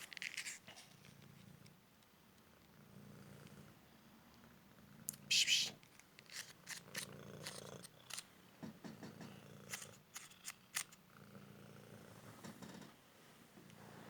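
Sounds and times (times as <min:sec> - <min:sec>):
cat purring: 0:02.7 - 0:03.8, 0:06.6 - 0:08.2, 0:08.9 - 0:10.0, 0:11.0 - 0:13.0
sharp clicks and crackles: 0:05.8 - 0:08.3, 0:09.7 - 0:11.0.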